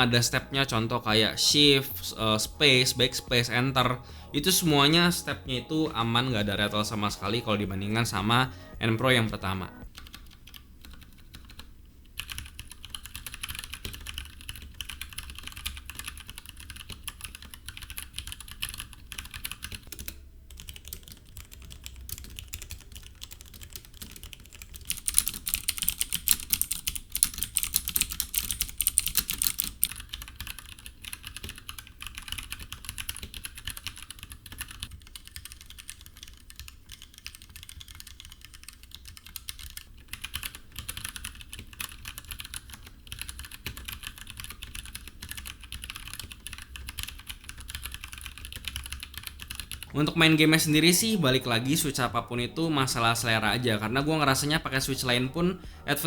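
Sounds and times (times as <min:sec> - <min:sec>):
mechanical keyboard typing: 0:09.8 - 0:49.9.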